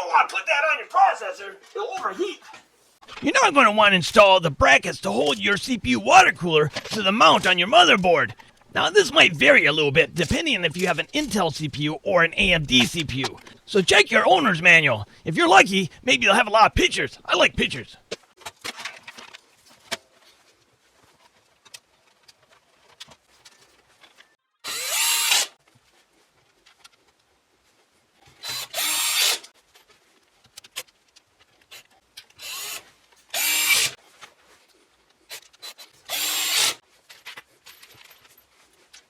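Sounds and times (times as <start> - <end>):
electric screwdriver driving screws: 24.7 - 25.5, 33.4 - 33.9, 36.1 - 36.8.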